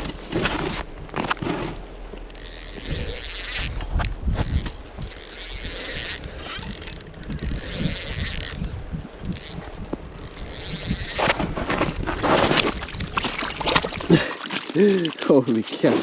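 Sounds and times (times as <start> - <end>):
fishing reel whirring: 2.1 - 11.9.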